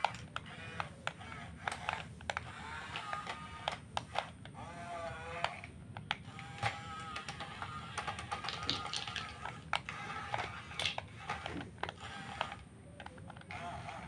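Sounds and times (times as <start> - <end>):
faint motor whine: 0.0 - 14.0.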